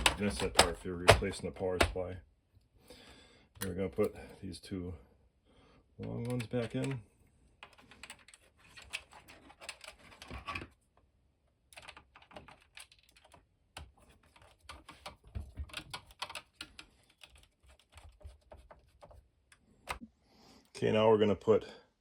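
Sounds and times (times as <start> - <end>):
screwdriver clicking on screws: 0.0 - 1.9.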